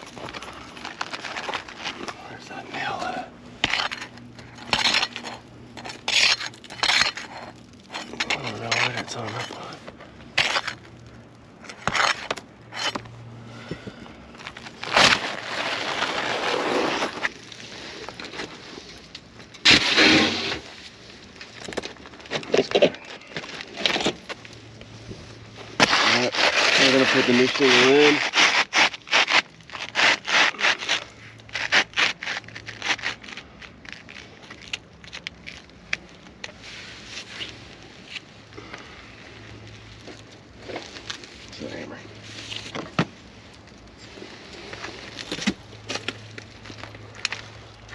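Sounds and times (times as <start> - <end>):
shingle cracking: 0.0 - 3.0, 3.6 - 24.9, 25.6 - 36.6, 42.5 - 47.9
low steady hum: 0.0 - 47.9
roof shingle crunching and scraping: 0.0 - 47.9
shingle scraping on roof: 14.6 - 19.0, 19.6 - 20.8, 25.7 - 33.6.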